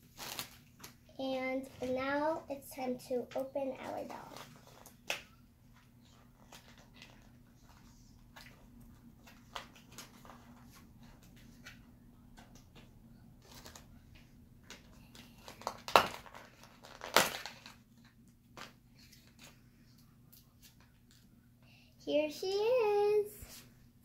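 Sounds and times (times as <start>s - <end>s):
plastic packaging crinkling: 0.0s - 1.0s, 14.6s - 19.6s.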